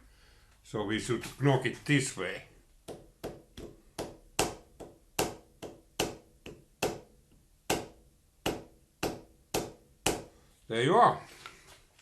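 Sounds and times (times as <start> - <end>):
hammer tapping metal: 2.8 - 10.3.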